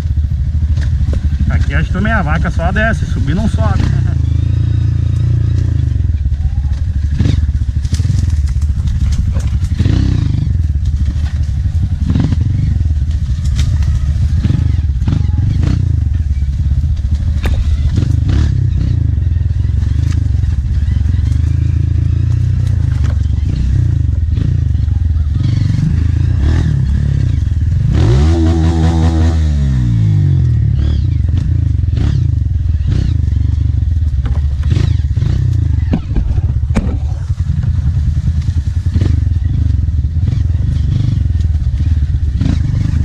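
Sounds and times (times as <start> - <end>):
motorcycle engine running: 0.0 - 43.0
knocks and clatter: 34.0 - 37.8.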